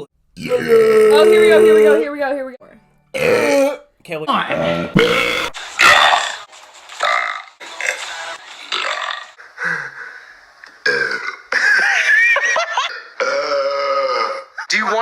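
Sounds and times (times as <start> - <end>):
man burping: 0.4 - 2.0, 3.2 - 3.9, 4.5 - 5.6, 10.8 - 11.8, 12.9 - 14.6.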